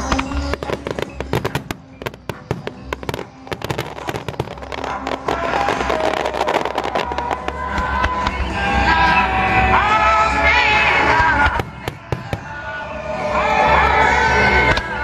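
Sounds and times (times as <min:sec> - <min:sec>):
fireworks crackling and popping: 0:00.0 - 0:12.7
music: 0:00.0 - 0:15.0.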